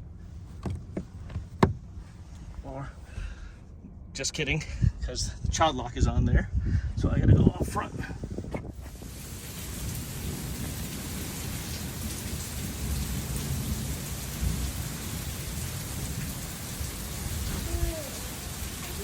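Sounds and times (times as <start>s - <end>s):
constant low rumble: 0.0s - 19.0s
heavy rain pouring: 8.9s - 19.0s.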